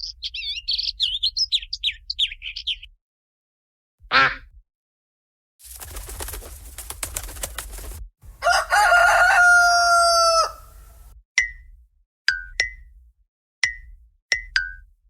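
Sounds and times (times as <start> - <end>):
rooster crowing: 8.3 - 11.1.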